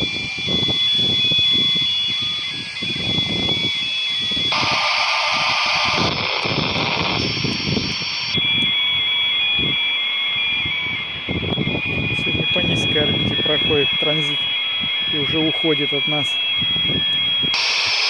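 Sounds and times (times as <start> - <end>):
stepping data tones: 0.0 - 9.0, 9.6 - 18.0
wind buffeting microphone: 0.0 - 15.4, 16.1 - 17.7
steady radio tones: 4.4 - 8.6, 10.6 - 18.0
receiver hiss: 4.5 - 8.5, 17.5 - 18.0.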